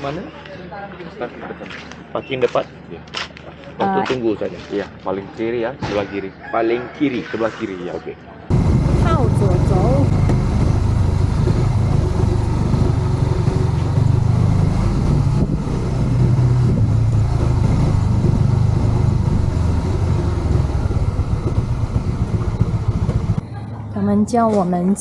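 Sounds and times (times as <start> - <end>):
motorcycle engine running: 8.5 - 25.0.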